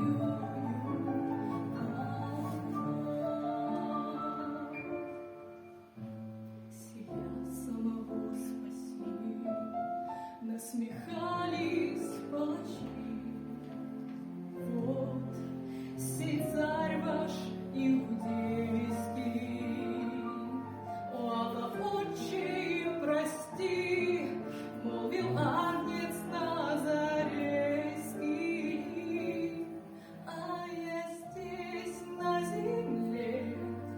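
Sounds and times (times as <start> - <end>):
person singing with vibrato: 0.0 - 5.9.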